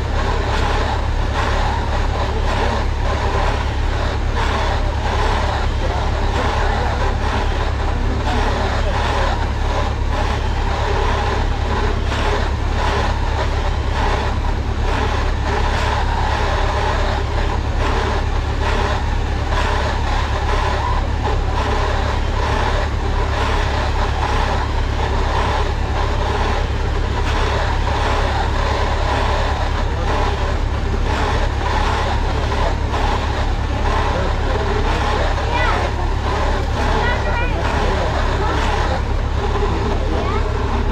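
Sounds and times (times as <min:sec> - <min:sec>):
farm machinery engine running: 0:00.0 - 0:40.9.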